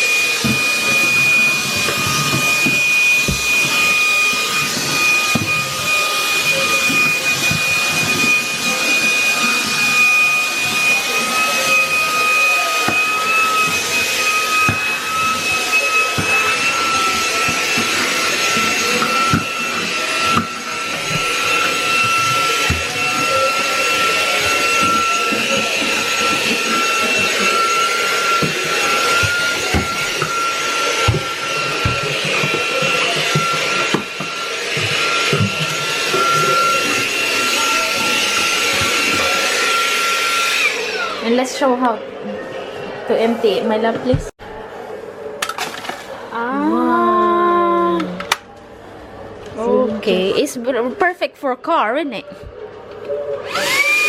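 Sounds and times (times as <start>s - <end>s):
handheld vacuum cleaner whine: 0.0s - 41.5s, 52.8s - 54.0s.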